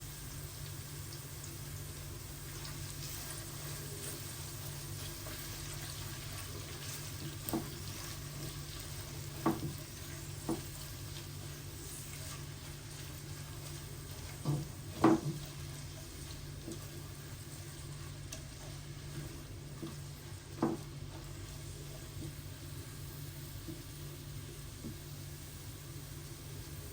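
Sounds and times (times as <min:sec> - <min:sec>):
food sizzling in a pan: 0:00.0 - 0:26.9
utensil knocking against pan: 0:09.4 - 0:09.8, 0:14.4 - 0:15.5, 0:20.6 - 0:20.9.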